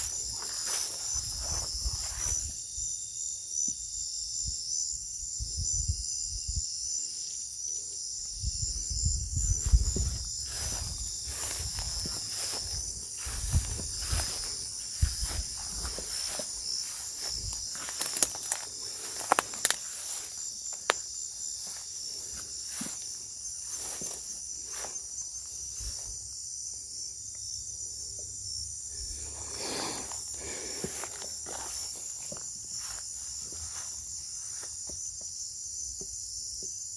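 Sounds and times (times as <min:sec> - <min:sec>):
footsteps through dry brush: 0:00.0 - 0:02.6, 0:09.4 - 0:26.2, 0:29.0 - 0:34.9
crickets chirping: 0:00.0 - 0:36.9.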